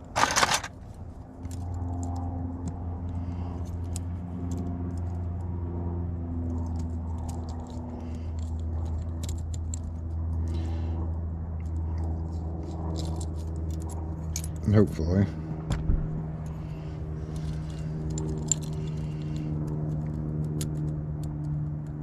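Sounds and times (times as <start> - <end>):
keys and lock parts clinking: 0.0 - 2.2, 6.4 - 10.7, 11.6 - 15.2, 16.4 - 21.6
steady low hum: 0.0 - 22.0.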